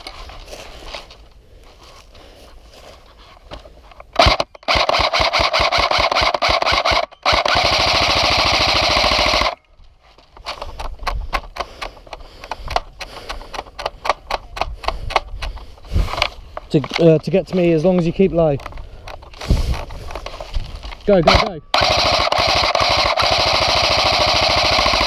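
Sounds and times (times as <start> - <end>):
airsoft gun automatic bursts: 4.2 - 9.6, 21.1 - 25.0.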